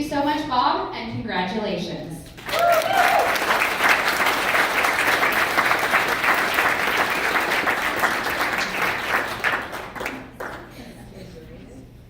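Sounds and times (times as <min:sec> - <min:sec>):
audience applauding: 0:02.4 - 0:11.0.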